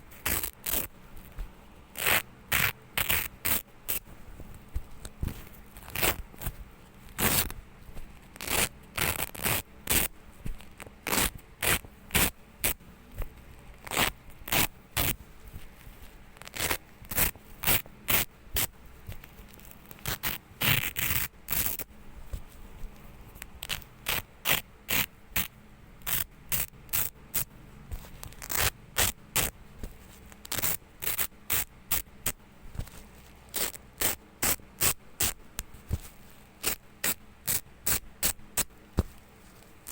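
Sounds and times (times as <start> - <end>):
velcro tape ripping: 0.2 - 0.9, 2.0 - 4.0, 5.8 - 6.5, 7.1 - 7.5, 8.4 - 10.1, 11.0 - 12.8, 13.8 - 15.2, 16.4 - 18.7, 19.6 - 21.9, 23.6 - 27.5, 28.2 - 29.5, 30.4 - 32.4, 33.5 - 35.4, 36.6 - 38.7.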